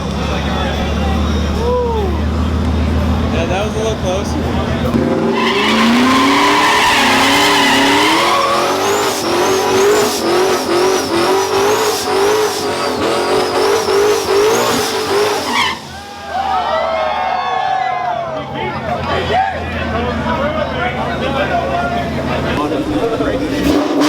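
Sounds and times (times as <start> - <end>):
high-revving car engine: 0.0 - 16.6, 19.1 - 24.0
tyre squeal: 5.3 - 16.2.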